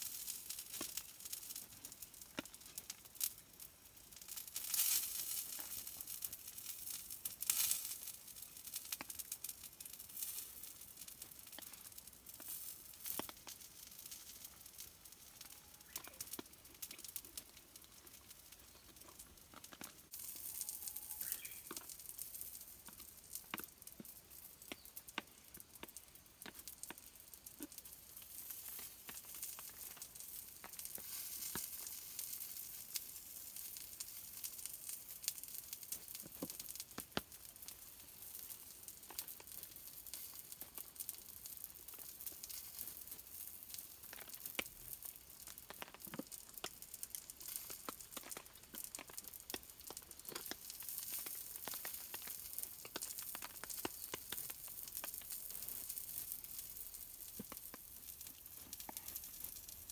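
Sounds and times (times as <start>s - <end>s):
food sizzling on griddle: 0.0s - 59.9s
pops and crackles: 0.0s - 59.9s.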